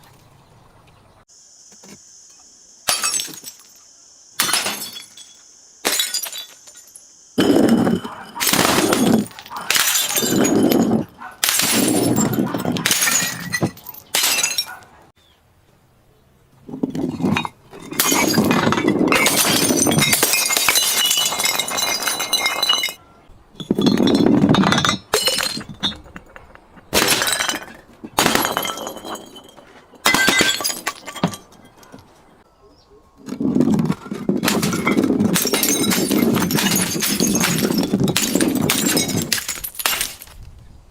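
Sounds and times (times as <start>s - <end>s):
glass bottles smashing: 2.9s - 3.8s, 4.4s - 14.8s, 16.8s - 23.0s, 23.6s - 32.1s, 33.5s - 40.4s
glass shards clinking: 4.4s - 14.9s, 16.8s - 23.0s, 23.6s - 32.3s, 34.4s - 40.4s.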